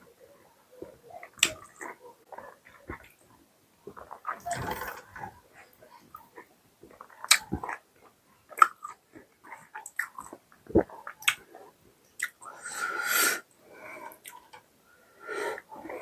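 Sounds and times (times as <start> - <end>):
person chewing food: 6.2 - 12.6
rushing breath-like sound: 12.6 - 14.1.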